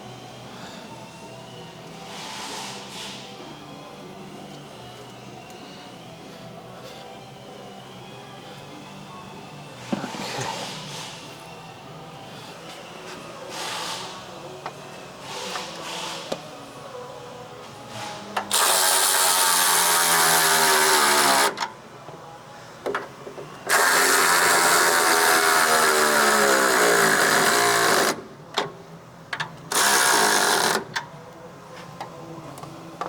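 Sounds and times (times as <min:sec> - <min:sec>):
power tool running: 0:18.5 - 0:21.6, 0:23.7 - 0:28.2, 0:29.7 - 0:30.9.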